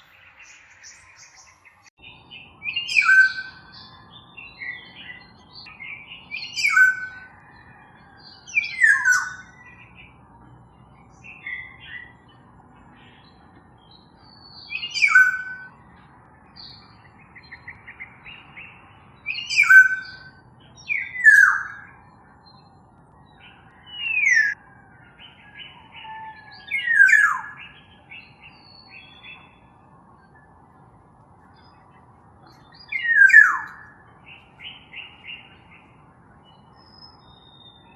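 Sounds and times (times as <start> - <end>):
oriole calling: 14.6 - 15.8, 19.2 - 22.4, 23.4 - 30.5, 31.5 - 36.1.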